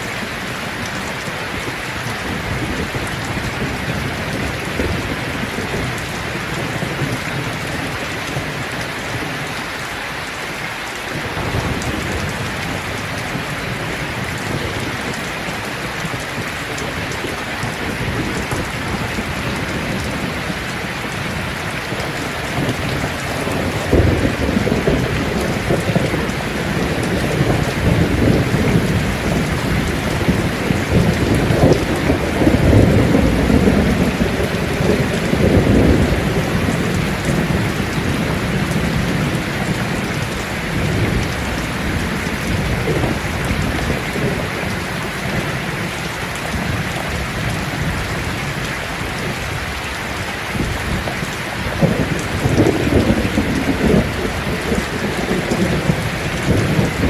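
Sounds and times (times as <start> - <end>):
rain falling on leaves: 0.0 - 57.0
low thunder rumbles: 11.2 - 49.8, 50.5 - 57.0.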